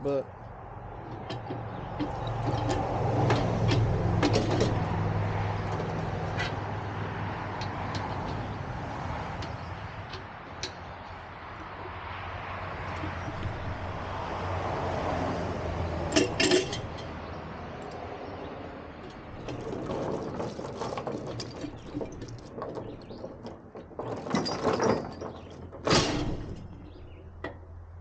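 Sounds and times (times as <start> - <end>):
metal chains clanking and rattling: 1.0 - 12.1, 15.7 - 18.0, 18.9 - 27.4.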